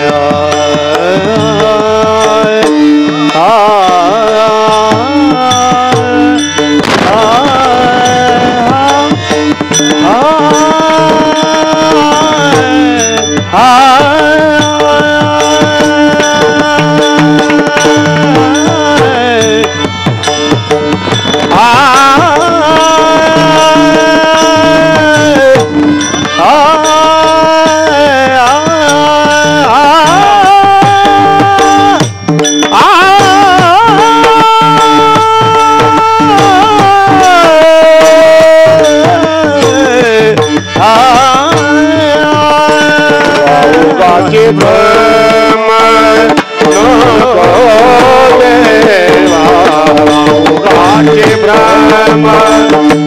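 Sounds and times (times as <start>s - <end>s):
person singing sliding notes: 0.0s - 20.0s
tabla beat: 0.0s - 53.0s.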